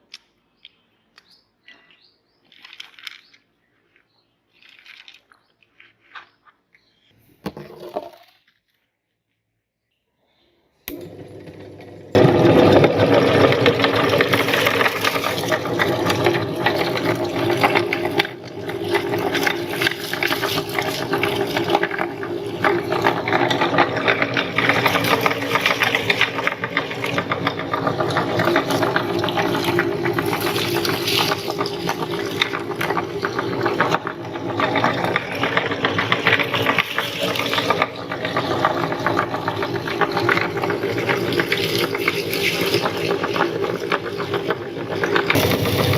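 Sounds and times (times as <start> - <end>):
meat grinder motor humming: 10.9 - 45.9
popcorn crackling in grinder: 10.9 - 45.9.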